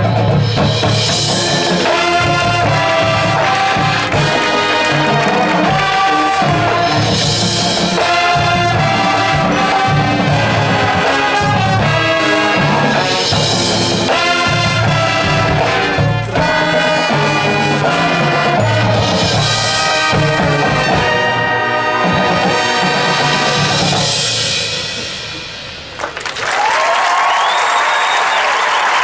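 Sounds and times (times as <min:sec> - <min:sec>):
marching band brass and drums: 0:00.0 - 0:29.0
crowd applause: 0:01.4 - 0:08.2, 0:25.0 - 0:29.0.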